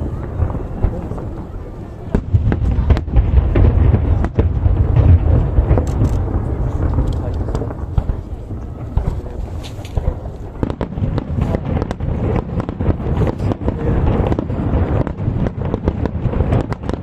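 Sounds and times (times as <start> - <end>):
continuous deep rumble: 0.0 - 17.0
fireworks bangs: 0.0 - 17.0.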